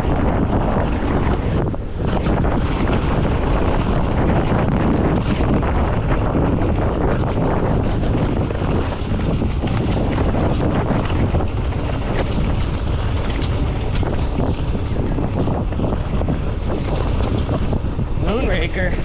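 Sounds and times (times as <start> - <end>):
bike rattling over ground: 0.0 - 19.0
wind buffeting microphone: 0.0 - 19.0.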